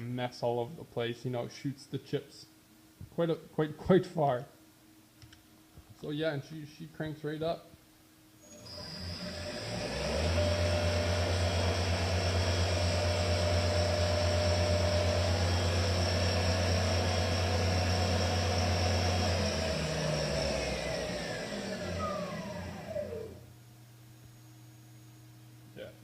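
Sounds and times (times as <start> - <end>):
spindle motor humming and whining: 8.4 - 23.5.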